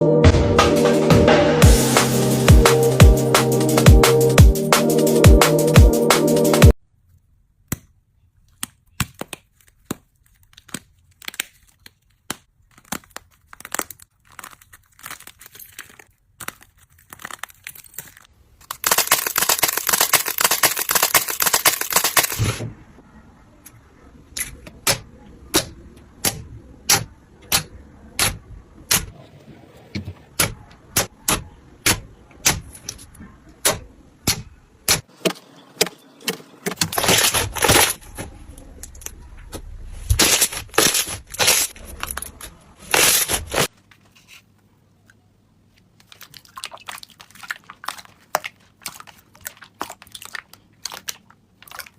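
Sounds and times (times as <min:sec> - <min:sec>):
slime squishing and crackling: 0:08.6 - 0:22.5, 0:45.8 - 0:51.9.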